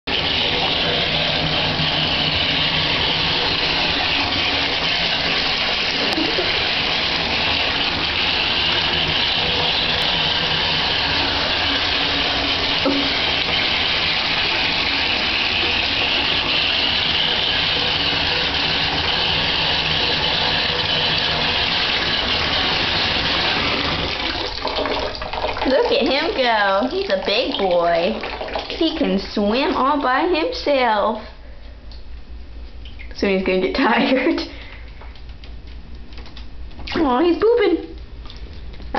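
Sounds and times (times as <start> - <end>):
tap running into bathwater: 0.1 - 30.6.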